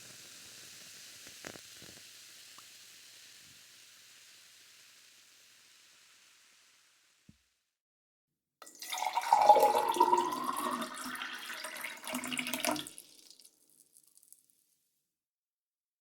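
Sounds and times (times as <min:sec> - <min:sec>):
water pouring into a glass: 0:08.6 - 0:14.4.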